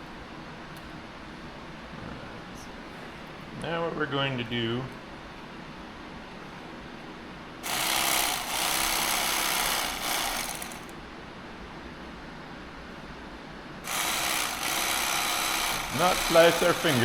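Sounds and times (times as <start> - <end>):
small power tool grinding: 7.6 - 10.9, 13.9 - 17.0.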